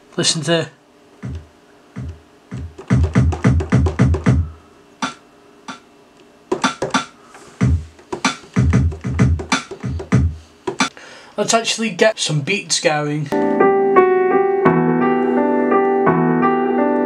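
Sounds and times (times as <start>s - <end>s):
sharper electronic drum hits: 2.0s - 5.8s.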